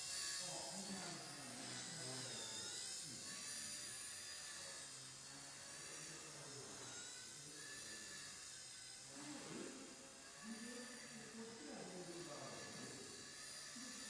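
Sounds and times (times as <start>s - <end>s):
toy helicopter rotor whine: 0.0s - 14.0s.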